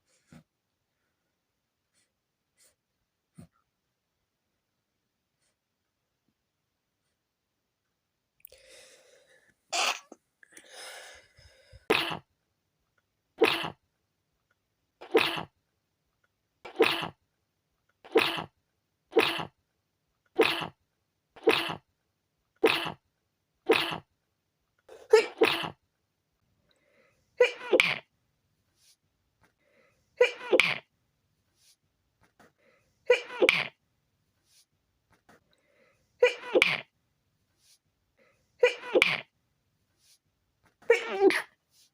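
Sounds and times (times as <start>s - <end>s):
breathy inhales: 8.5s - 9.6s, 10.5s - 11.9s, 35.5s - 36.1s
stifled sneezes: 9.8s - 10.2s, 11.9s - 12.3s, 13.4s - 13.8s, 15.0s - 15.6s, 16.6s - 17.2s, 18.0s - 19.6s, 20.4s - 20.8s, 21.4s - 21.9s, 22.6s - 23.0s, 23.6s - 24.1s, 24.9s - 25.8s, 27.4s - 28.1s, 30.2s - 30.9s, 33.0s - 33.8s, 36.2s - 37.0s, 38.6s - 39.3s, 40.7s - 41.6s.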